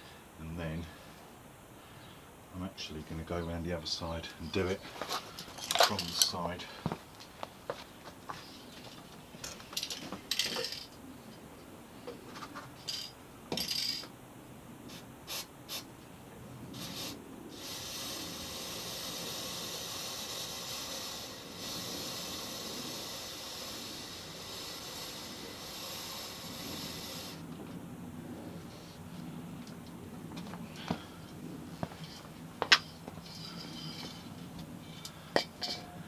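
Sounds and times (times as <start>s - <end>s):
aerosol can spraying: 16.8s - 27.4s.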